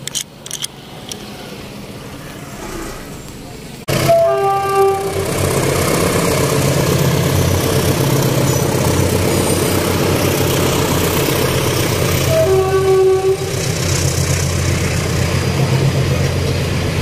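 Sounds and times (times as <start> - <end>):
train engine rumble: 0.0 - 17.0
train horn: 3.9 - 5.4, 12.2 - 13.7.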